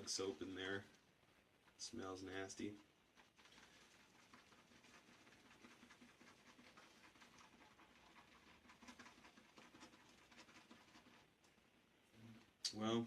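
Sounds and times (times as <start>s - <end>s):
shaving brush whisking lather: 1.6s - 11.6s.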